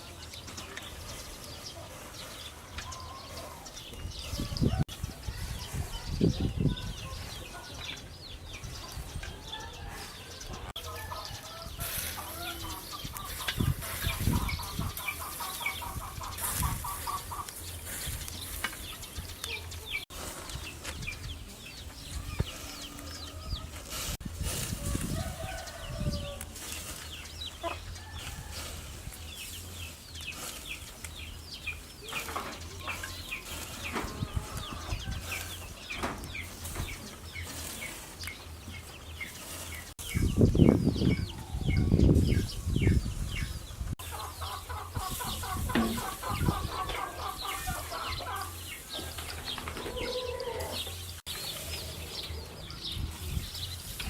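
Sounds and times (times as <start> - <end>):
chickens clucking: 0.0 - 54.0.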